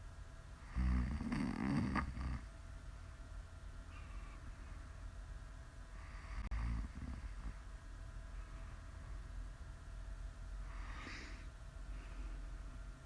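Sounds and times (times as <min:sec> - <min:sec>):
woman snoring: 0:00.6 - 0:02.5, 0:06.0 - 0:07.6.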